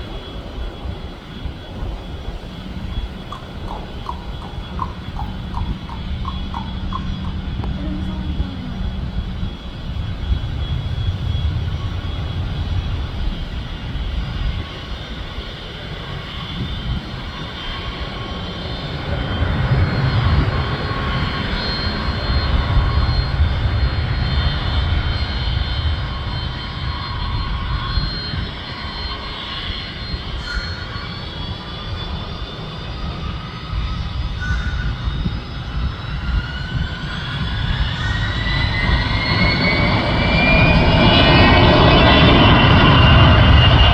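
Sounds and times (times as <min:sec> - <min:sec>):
jet engines rumbling and whining: 0:00.0 - 0:43.9.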